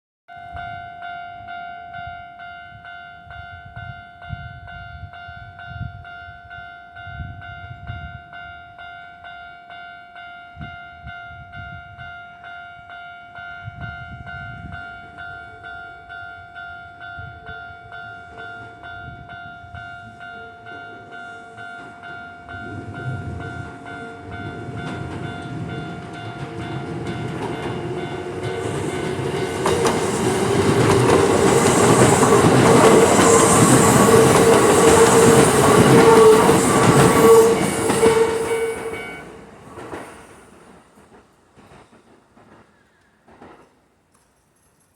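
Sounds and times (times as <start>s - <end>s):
electric train rumble: 10.5s - 44.0s.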